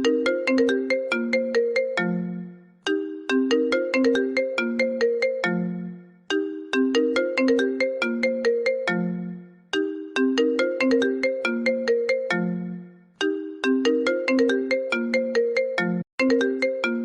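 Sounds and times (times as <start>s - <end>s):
plucked ringtone melody: 0.0s - 17.0s.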